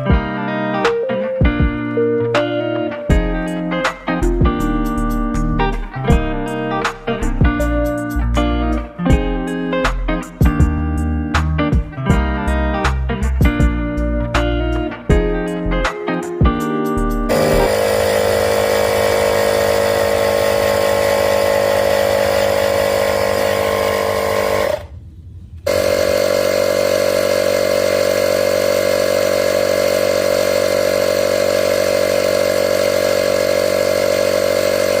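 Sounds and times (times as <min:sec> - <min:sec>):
electric air compressor buzzing: 0:03.1 - 0:10.1, 0:17.3 - 0:24.9, 0:25.7 - 0:35.0.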